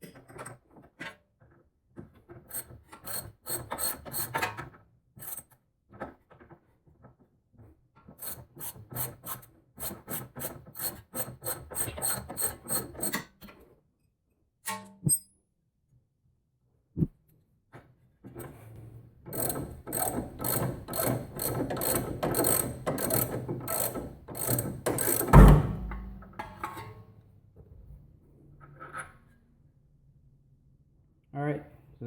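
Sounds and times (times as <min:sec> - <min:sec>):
ratchet wrench clicking: 0:19.4 - 0:25.3.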